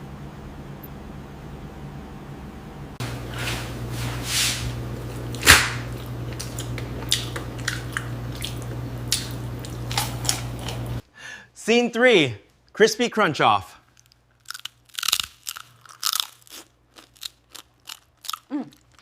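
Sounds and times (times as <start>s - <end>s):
steady low hum: 0.0s - 11.6s
wet squishy chewing: 4.9s - 11.0s.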